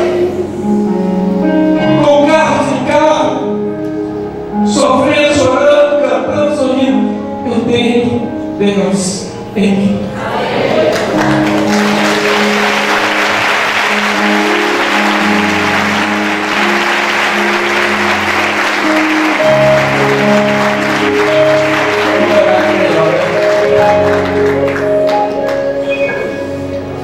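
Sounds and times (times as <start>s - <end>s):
band playing held chords: 7.2s - 27.0s
congregation applauding: 10.7s - 26.7s.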